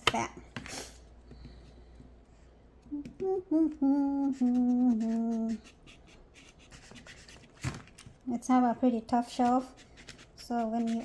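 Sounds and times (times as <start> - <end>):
person humming: 2.8 - 5.7.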